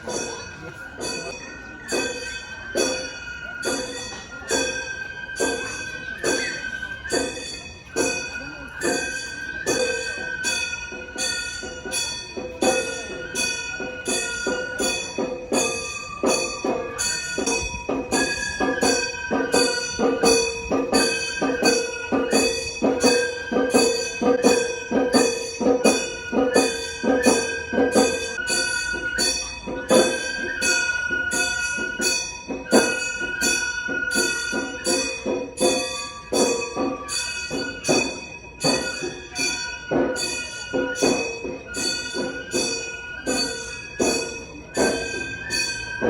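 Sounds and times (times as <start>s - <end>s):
percussion strokes: 0.0s - 46.0s.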